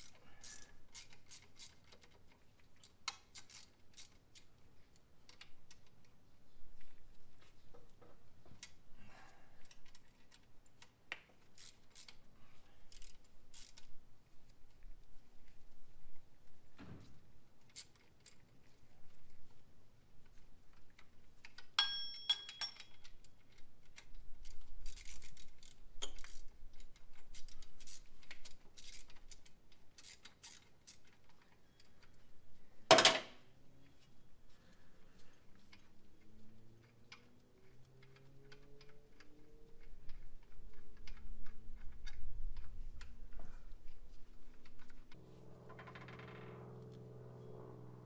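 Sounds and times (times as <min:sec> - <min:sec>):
hand tools clinking on metal: 0:21.8 - 0:23.2.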